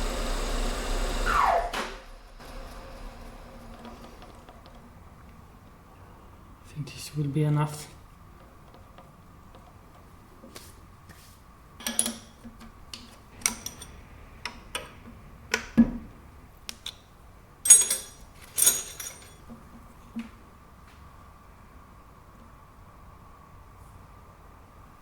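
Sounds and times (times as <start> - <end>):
metal tools clicking and knocking: 11.8 - 15.1, 17.6 - 19.6
metallic clinks ringing: 17.6 - 19.4.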